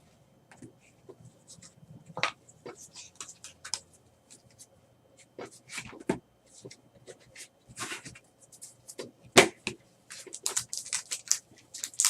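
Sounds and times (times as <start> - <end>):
trading cards rustling: 10.1 - 12.0.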